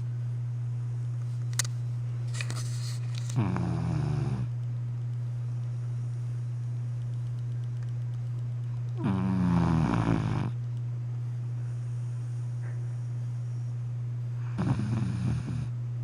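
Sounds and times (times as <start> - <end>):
steady low hum: 0.0 - 16.0
puppy snoring: 3.3 - 4.6, 9.0 - 10.6, 14.4 - 15.8.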